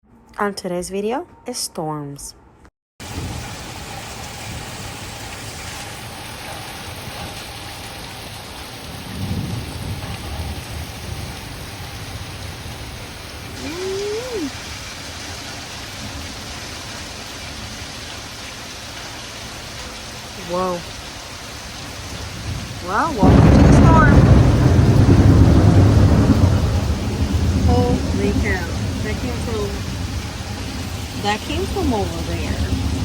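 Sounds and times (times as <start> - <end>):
low rumble of thunder: 3.0 - 13.6, 21.7 - 33.0
steady rain falling: 3.0 - 33.0.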